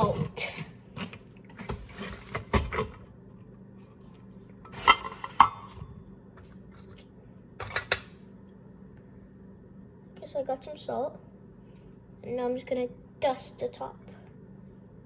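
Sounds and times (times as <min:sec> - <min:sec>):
dishes and utensils clattering: 0:04.7 - 0:05.8.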